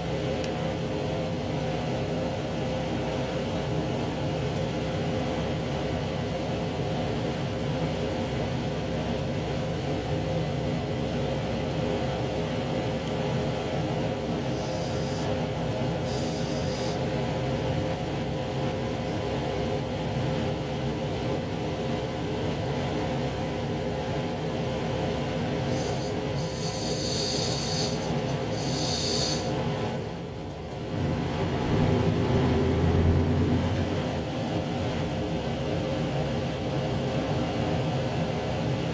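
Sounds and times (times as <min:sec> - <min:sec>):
train running rumble: 0:00.0 - 0:38.9.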